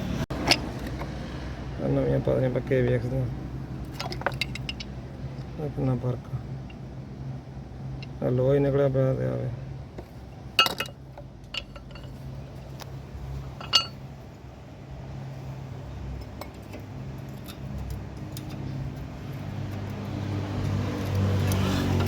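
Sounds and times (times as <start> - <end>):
steady low hum: 0.0 - 21.5.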